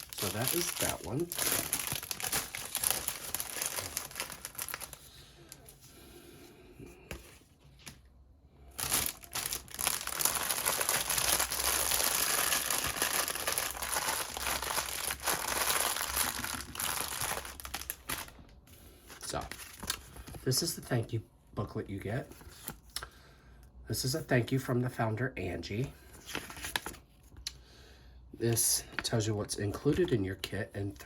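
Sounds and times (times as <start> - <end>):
packaging crinkling: 0.0 - 5.1, 8.8 - 18.5, 19.1 - 20.4.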